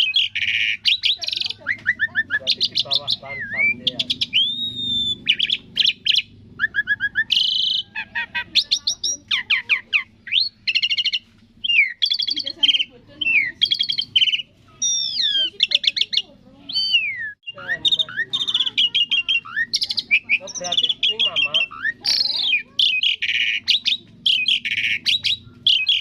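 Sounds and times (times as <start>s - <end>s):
starling singing: 0.0s - 26.0s.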